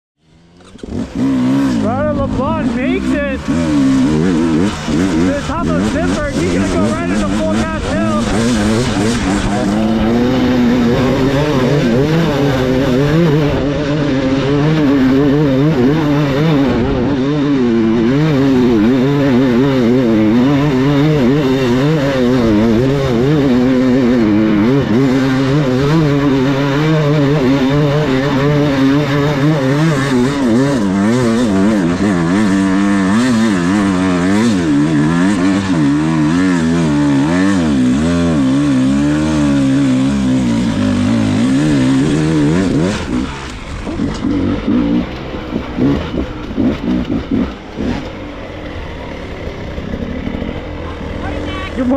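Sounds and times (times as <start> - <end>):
dirt bike engine revving: 0.2 - 51.9.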